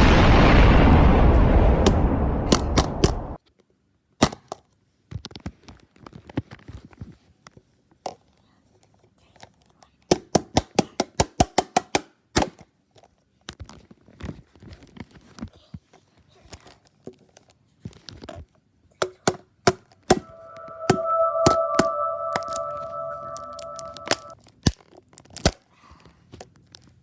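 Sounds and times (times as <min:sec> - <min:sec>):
steady tone: 0:20.2 - 0:24.4.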